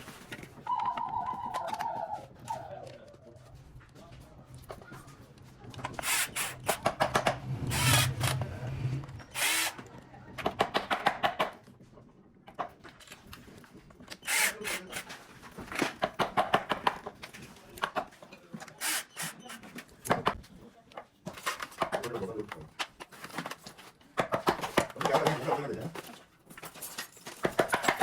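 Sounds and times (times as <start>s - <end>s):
power tool clicking rapidly: 6.0s - 9.9s, 14.2s - 15.1s.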